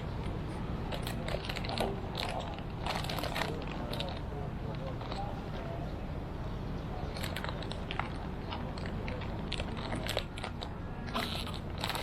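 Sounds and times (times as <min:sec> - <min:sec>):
clicks and crackles: 0:00.0 - 0:05.4, 0:07.1 - 0:12.0.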